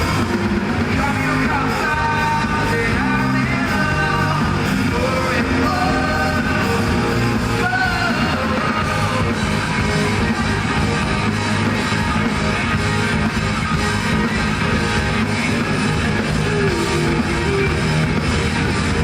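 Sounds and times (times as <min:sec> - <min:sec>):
man singing: 0:00.0 - 0:09.8
live rock band: 0:00.0 - 0:19.0.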